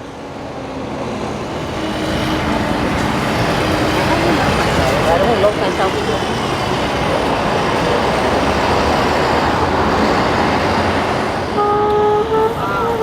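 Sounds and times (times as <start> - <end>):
city street traffic: 0.0 - 13.0.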